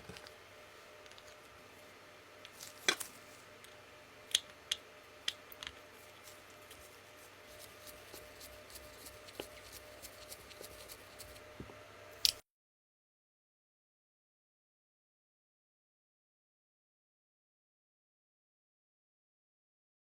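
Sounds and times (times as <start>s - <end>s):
faint steady hum: 0.0s - 12.4s.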